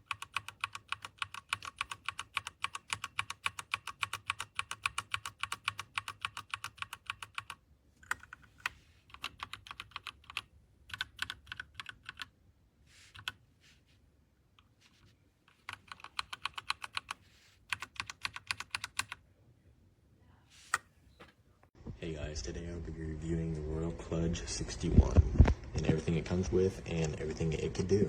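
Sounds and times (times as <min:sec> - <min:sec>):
mechanical keyboard key clicks: 0:00.0 - 0:08.3, 0:15.6 - 0:19.2.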